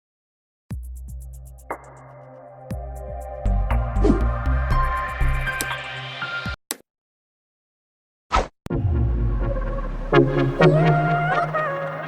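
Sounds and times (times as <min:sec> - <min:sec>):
kick drum: 0:00.7 - 0:01.2, 0:02.7 - 0:03.0
steady bass: 0:02.7 - 0:05.6, 0:08.7 - 0:11.6
synth chord: 0:08.7 - 0:12.0.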